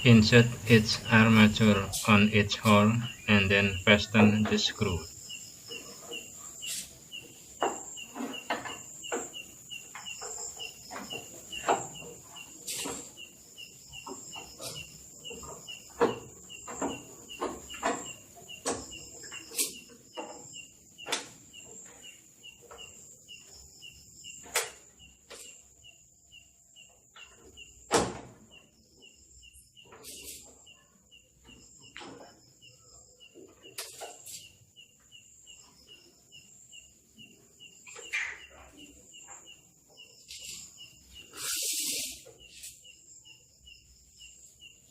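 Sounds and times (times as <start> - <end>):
parts clicking and knocking: 0.0 - 25.9
insects chirping: 0.0 - 44.9.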